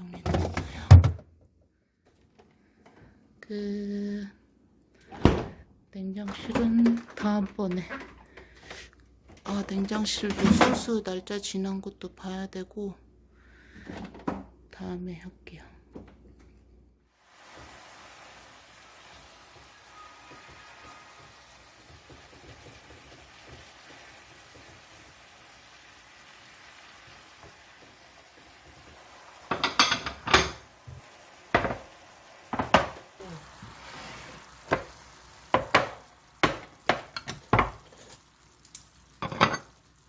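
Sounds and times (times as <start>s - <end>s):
dishes clattering and clinking: 29.5s - 30.7s, 31.5s - 31.9s, 32.5s - 33.0s, 34.7s - 38.2s, 38.8s - 39.8s.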